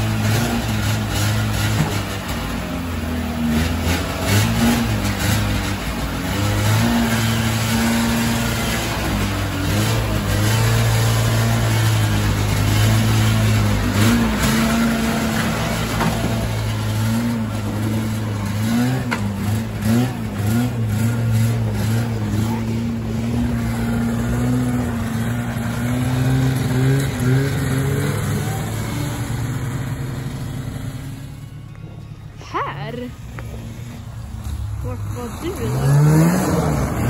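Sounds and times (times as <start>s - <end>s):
snowmobile engine revving: 0.0s - 31.7s, 32.5s - 37.0s.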